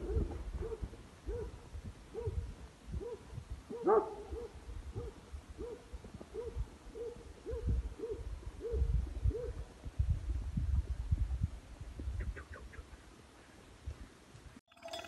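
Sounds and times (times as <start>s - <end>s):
dog barking: 0.0s - 2.4s, 3.0s - 9.6s.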